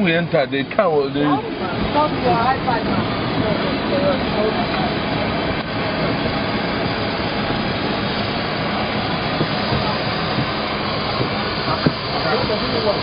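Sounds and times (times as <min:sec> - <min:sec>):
airliner cabin rushing noise: 0:01.6 - 0:13.0.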